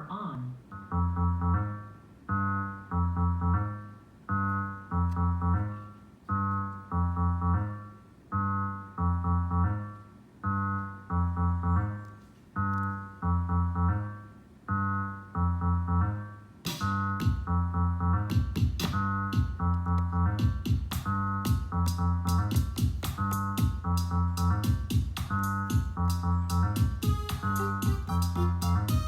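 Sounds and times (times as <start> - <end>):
looped electric piano chords: 0.0 - 29.0
low bass line: 0.7 - 29.0.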